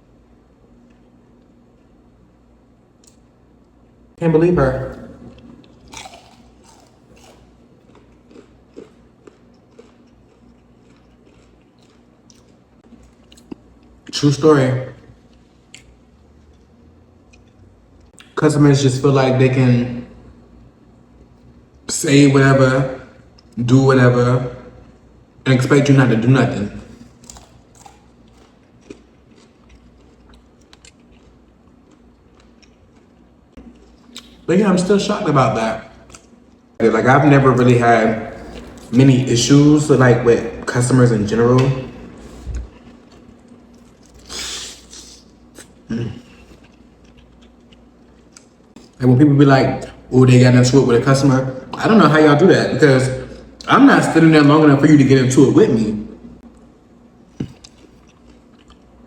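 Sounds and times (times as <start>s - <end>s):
crunchy chewing of fried chicken: 5.2s - 14.2s, 15.1s - 18.2s, 26.6s - 34.5s, 38.2s - 39.5s, 42.2s - 49.1s, 56.4s - 59.0s.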